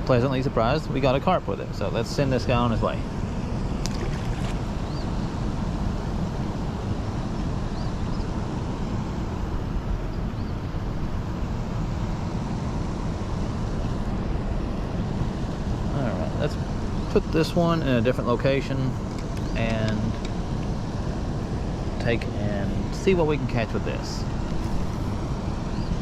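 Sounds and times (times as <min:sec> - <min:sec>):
rushing water: 0:03.8 - 0:05.0
wind buffeting microphone: 0:18.9 - 0:26.0.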